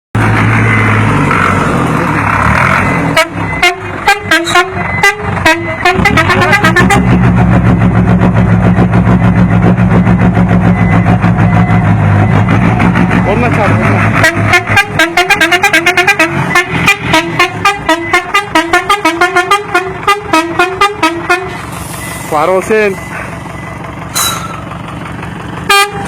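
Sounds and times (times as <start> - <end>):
diesel engine running: 0.2 - 26.0
musical air horn melody: 3.2 - 7.2, 14.2 - 22.1, 25.7 - 26.0.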